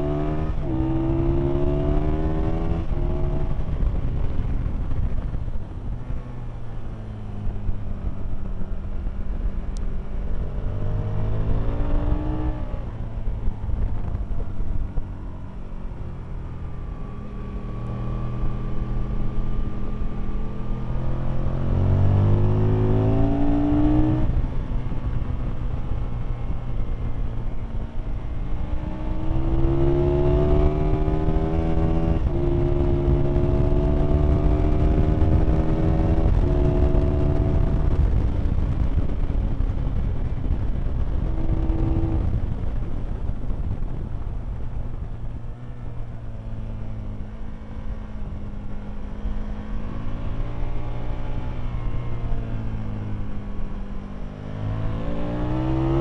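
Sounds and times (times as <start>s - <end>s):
motorcycle engine revving: 0.0s - 5.6s, 16.0s - 56.0s.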